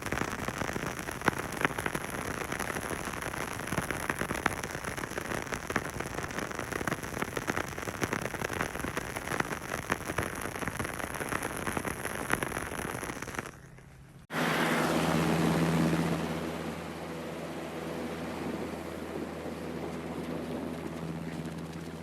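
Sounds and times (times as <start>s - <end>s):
film crackling and popping: 0.0s - 14.0s
steady low hum: 13.6s - 22.0s.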